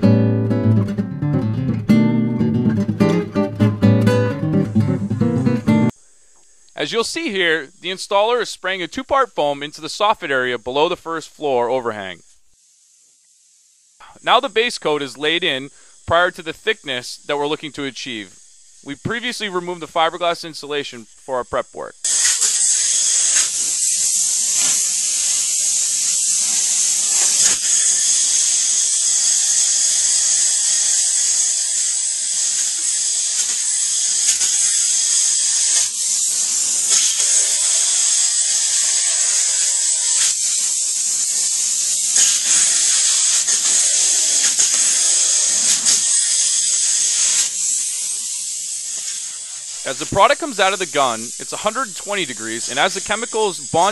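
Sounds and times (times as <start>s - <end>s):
spray foam gun hissing: 11.9s - 53.9s.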